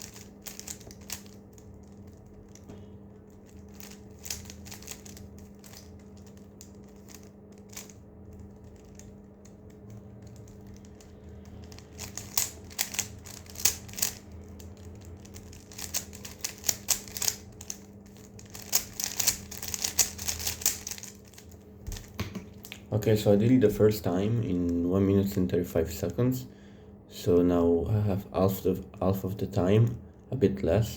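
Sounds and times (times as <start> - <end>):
puzzle cube plastic layers clicking: 0.0 - 2.7, 3.3 - 22.7
faint steady hum: 0.0 - 30.9.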